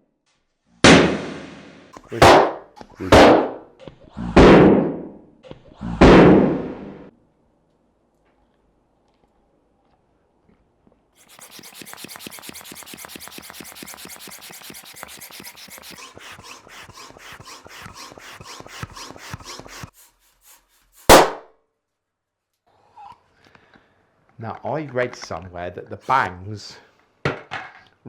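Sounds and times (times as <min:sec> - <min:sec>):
balloon bursting: 0:00.8 - 0:05.2, 0:05.8 - 0:07.1, 0:11.2 - 0:20.0, 0:20.8 - 0:21.5
rasping pump strokes: 0:02.0 - 0:04.5, 0:11.2 - 0:21.5.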